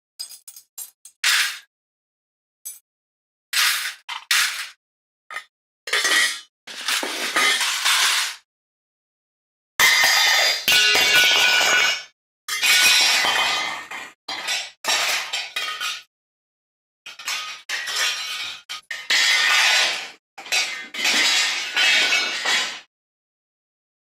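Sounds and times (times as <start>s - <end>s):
metal dishes crashing: 5.3s - 8.4s, 9.8s - 16.0s, 17.1s - 22.9s.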